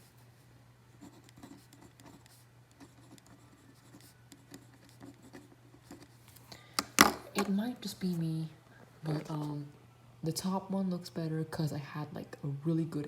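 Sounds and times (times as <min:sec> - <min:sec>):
low steady hum: 0:00.0 - 0:13.0
pencil scratching on paper: 0:01.0 - 0:06.2.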